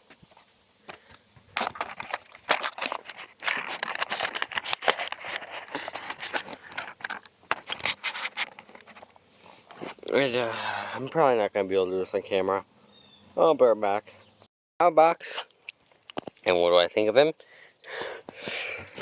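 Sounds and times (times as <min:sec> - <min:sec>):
plastic packaging crinkling: 0:01.6 - 0:09.0.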